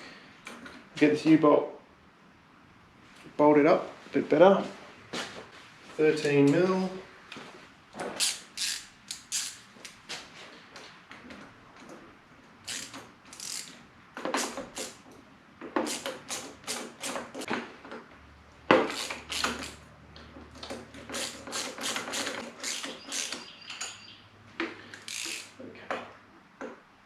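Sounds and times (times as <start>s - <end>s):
ratchet clicking: 8.2s - 9.7s, 12.7s - 13.8s, 14.4s - 15.0s, 15.8s - 17.5s, 18.9s - 19.8s, 21.0s - 23.5s, 25.0s - 25.6s.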